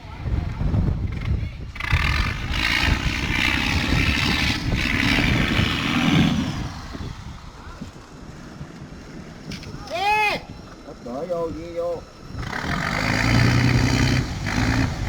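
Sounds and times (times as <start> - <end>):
motor engine running: 11.8 - 15.0.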